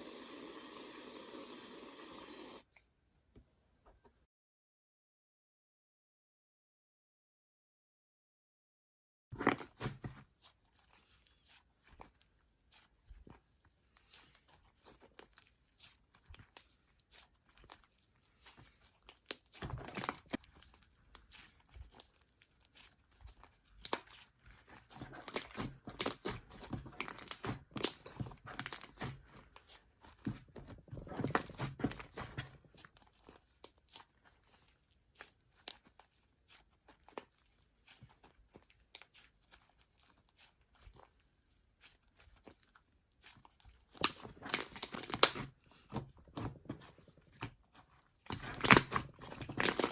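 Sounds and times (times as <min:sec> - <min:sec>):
slime crackling and popping: 0:14.0 - 0:49.9.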